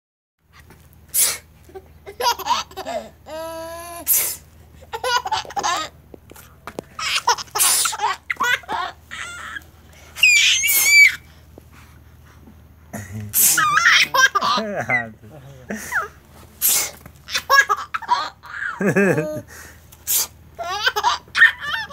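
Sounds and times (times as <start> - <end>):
baby laughing and squealing: 1.7 - 4.1, 4.8 - 5.9, 7.0 - 9.6, 10.2 - 11.3, 13.4 - 15.1, 17.2 - 19.4, 20.6 - 21.9
child sneezing: 16.6 - 17.0.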